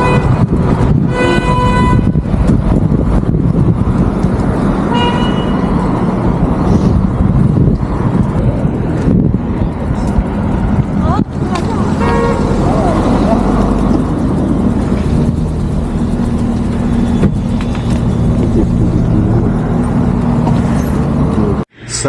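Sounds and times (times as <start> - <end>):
vehicle horn honking: 0.0 - 0.4, 1.0 - 2.2, 4.9 - 5.8, 11.9 - 12.7
wind buffeting microphone: 0.0 - 20.5.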